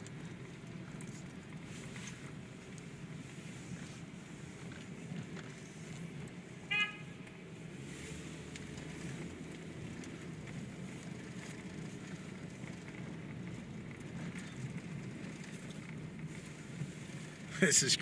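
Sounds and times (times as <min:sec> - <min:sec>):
car driving rumble: 0:00.0 - 0:18.0
car horn beep: 0:06.7 - 0:07.2.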